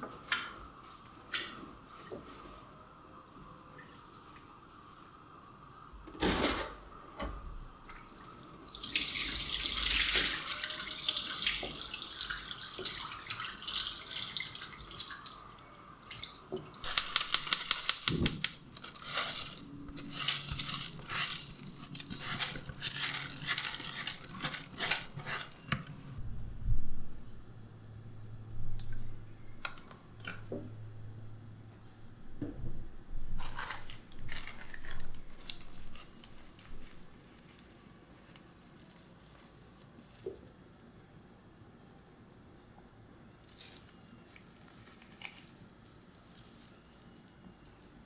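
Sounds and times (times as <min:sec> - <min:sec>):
kitchen work clatter: 0:06.1 - 0:07.4, 0:16.5 - 0:26.2
tap running water: 0:07.9 - 0:25.9
loud sharp clicks: 0:16.8 - 0:18.9.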